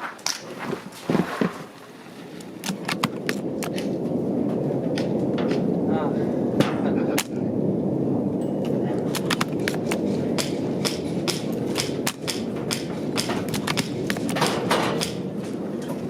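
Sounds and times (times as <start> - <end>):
wind buffeting microphone: 0.4 - 16.0
sharp irregular clicks and taps: 9.1 - 15.2.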